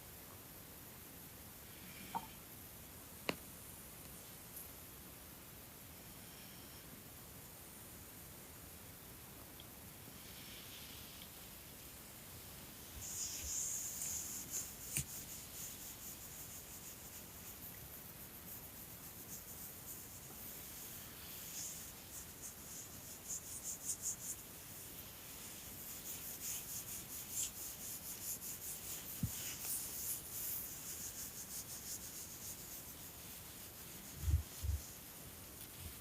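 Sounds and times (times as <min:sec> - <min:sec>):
soft rubbing or scratching strokes: 0:10.1 - 0:36.0.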